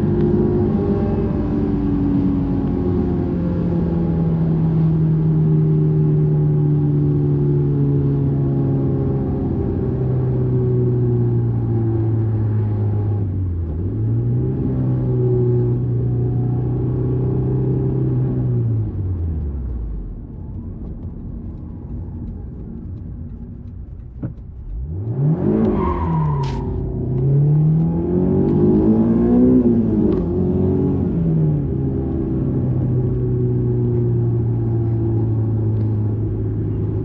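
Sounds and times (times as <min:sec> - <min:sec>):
car engine running: 0:15.6 - 0:37.0.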